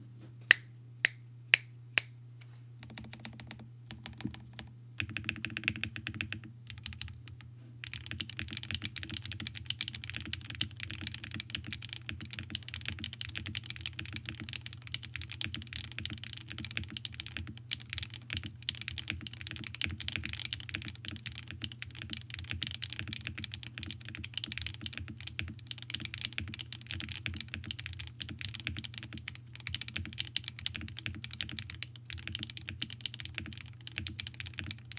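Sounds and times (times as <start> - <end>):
faint low hum: 0.0 - 34.9
mechanical keyboard typing: 2.8 - 7.2, 7.8 - 34.9.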